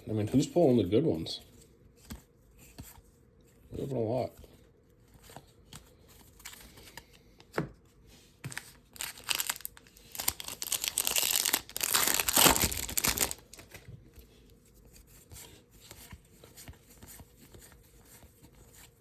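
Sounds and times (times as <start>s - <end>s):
wrapper tearing and crinkling: 8.5s - 13.8s.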